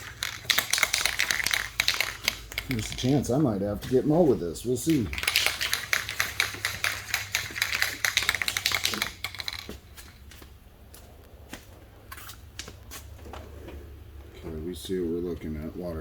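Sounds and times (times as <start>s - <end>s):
spray can ball rattling: 0.0s - 10.3s.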